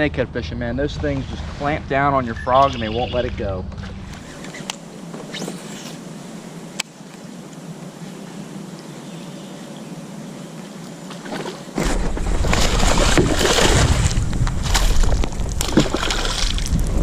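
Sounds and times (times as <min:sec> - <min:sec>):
water and breeze: 0:00.0 - 0:17.0
water sloshing and splashing: 0:11.1 - 0:17.0.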